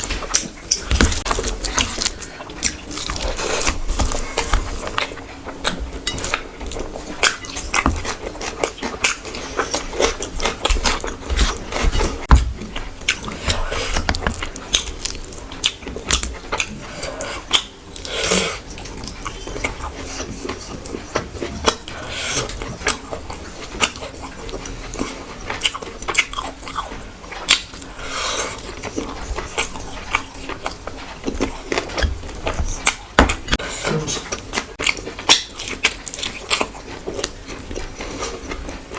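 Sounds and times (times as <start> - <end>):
person chewing food: 0.0 - 38.9.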